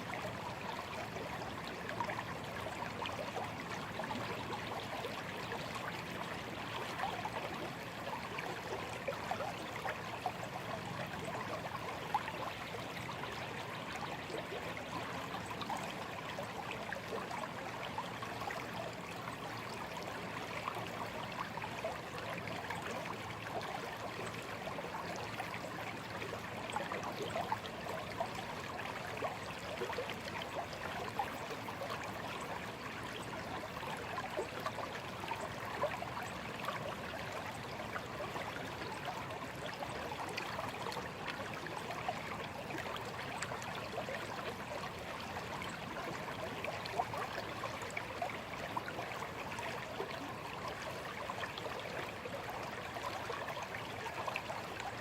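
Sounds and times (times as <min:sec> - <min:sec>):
stream babbling over stones: 0:00.0 - 0:55.0.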